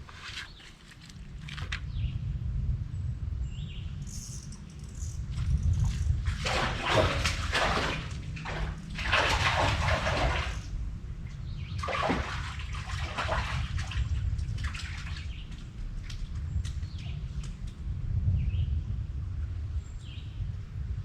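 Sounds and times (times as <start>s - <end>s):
low steady rumble: 1.0s - 21.0s
stream water splashing: 6.0s - 10.8s, 11.8s - 15.4s.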